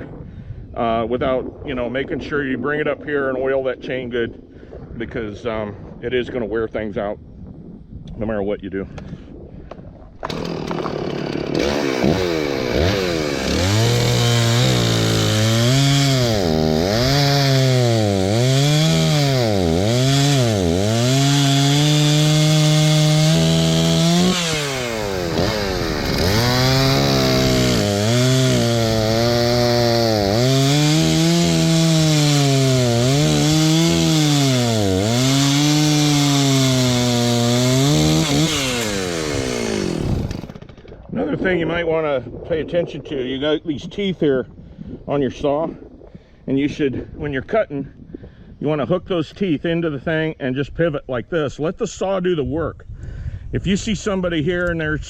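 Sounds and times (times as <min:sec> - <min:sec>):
chainsaw cutting wood: 0:10.2 - 0:41.0.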